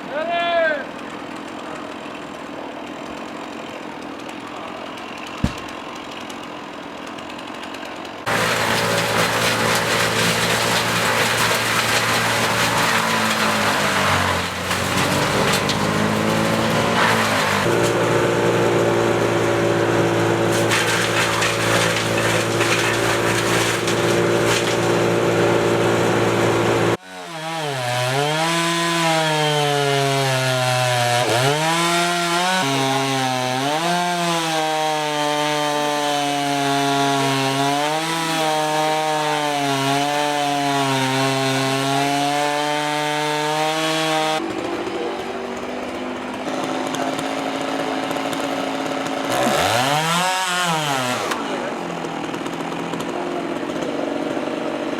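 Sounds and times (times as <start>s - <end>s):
chainsaws cutting wood: 0.0s - 54.9s.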